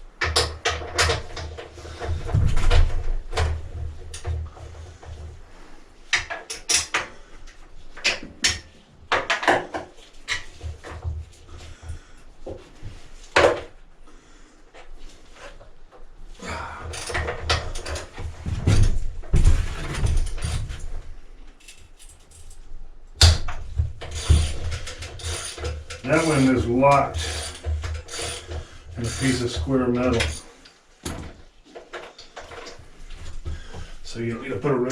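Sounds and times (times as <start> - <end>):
metal scraping and rubbing: 24.1 - 30.6.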